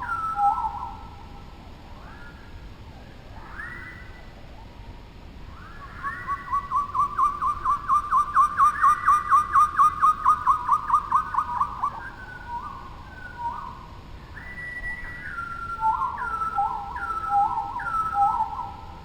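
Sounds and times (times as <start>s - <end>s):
bird whistling falling notes: 14.4s - 18.7s.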